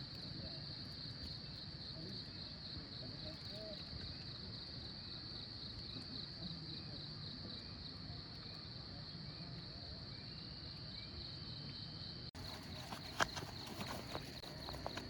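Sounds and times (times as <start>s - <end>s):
clicks and rustling: 12.4s - 15.0s.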